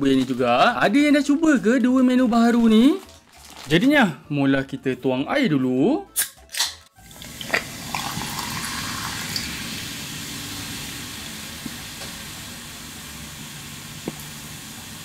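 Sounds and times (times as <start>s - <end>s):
water pouring: 7.0s - 12.0s.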